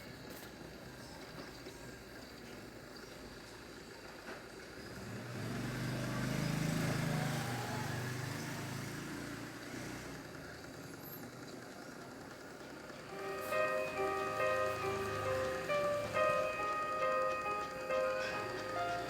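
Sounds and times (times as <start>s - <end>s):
vehicle engine passing by: 4.9s - 10.6s.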